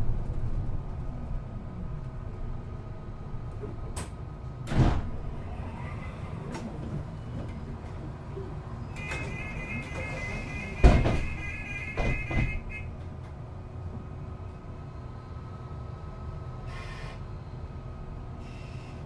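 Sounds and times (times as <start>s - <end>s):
bus engine and road rumble: 0.0s - 19.0s.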